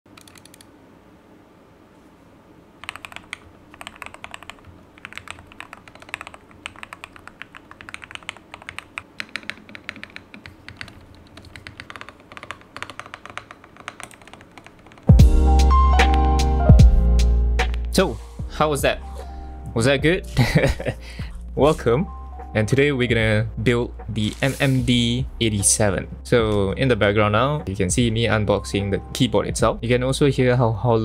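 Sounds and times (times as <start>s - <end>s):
mechanical keyboard typing: 0.1s - 0.7s, 2.8s - 15.2s.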